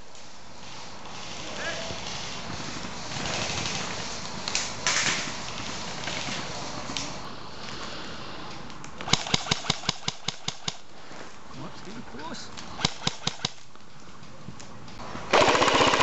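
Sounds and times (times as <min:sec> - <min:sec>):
steady outdoor hiss: 0:00.0 - 0:16.0
airsoft rifle rapid shots: 0:09.0 - 0:10.8, 0:12.7 - 0:13.6, 0:15.3 - 0:16.0.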